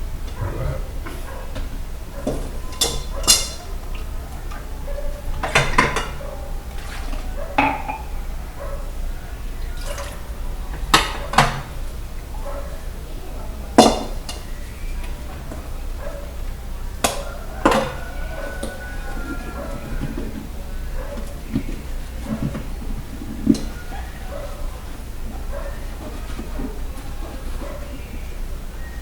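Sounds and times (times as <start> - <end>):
dishes and cutlery clinking: 2.3 - 4.0, 5.4 - 8.1, 17.0 - 22.6.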